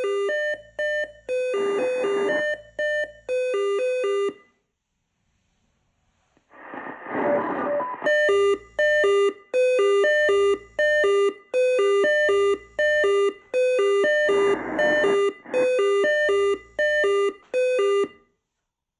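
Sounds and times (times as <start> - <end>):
pager alert beeping two pitches: 14.0 - 16.5.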